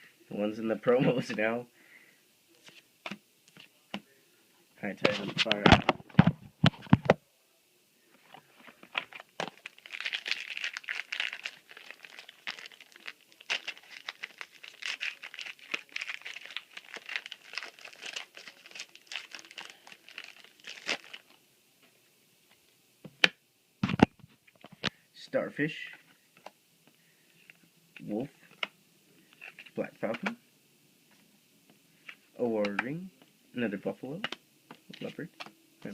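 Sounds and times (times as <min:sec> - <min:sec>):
foil wrapper crinkling and tearing: 0:09.0 - 0:21.4.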